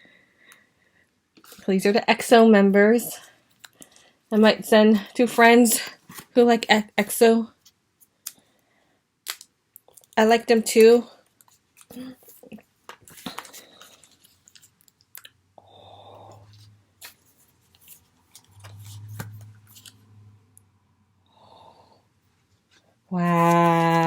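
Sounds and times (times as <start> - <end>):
postcards rustling in plastic sleeves: 9.3 - 15.2, 16.5 - 20.2, 23.2 - 24.0.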